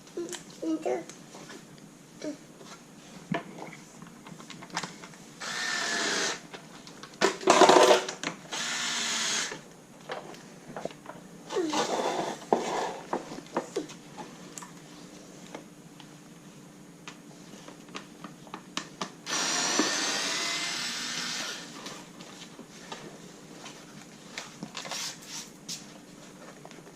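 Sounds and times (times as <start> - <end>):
electric screwdriver running: 5.4 - 6.4, 8.5 - 9.6, 19.3 - 21.8.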